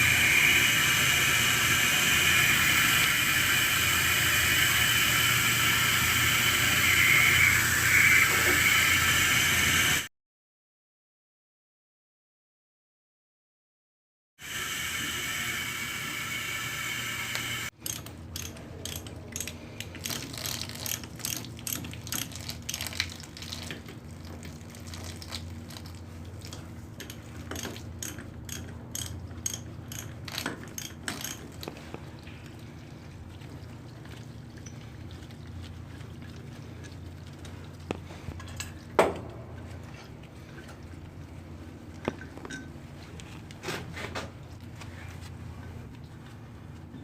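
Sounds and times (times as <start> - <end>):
ratchet wrench clicking: 17.8 - 22.3, 27.0 - 31.4.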